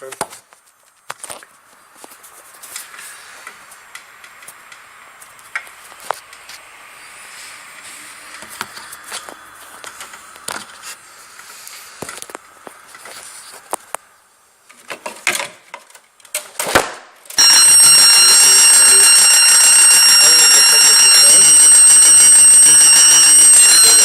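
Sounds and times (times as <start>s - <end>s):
fire alarm high-pitched tone: 17.4s - 24.0s.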